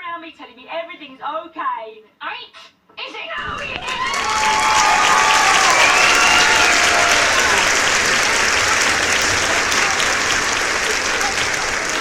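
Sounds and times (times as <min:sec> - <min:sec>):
crowd applause: 0:03.4 - 0:12.0.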